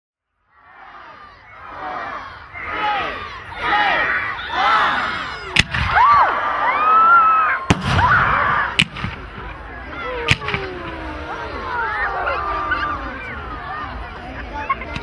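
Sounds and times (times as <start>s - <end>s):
crowd shouting and cheering: 0.4s - 15.0s
firework bangs: 5.5s - 6.1s, 7.7s - 9.6s.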